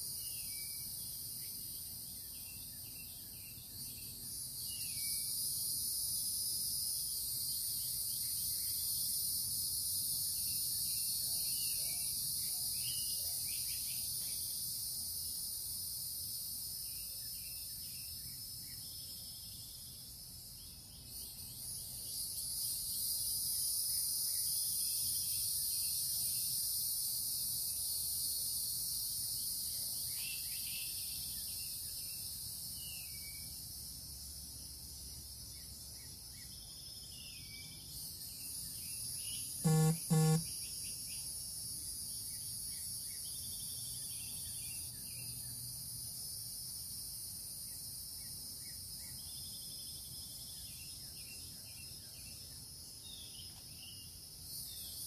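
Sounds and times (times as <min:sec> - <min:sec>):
insect chorus drone: 0:00.0 - 0:55.0
bird chirps: 0:39.6 - 0:40.4
short loud beeps: 0:39.6 - 0:40.4.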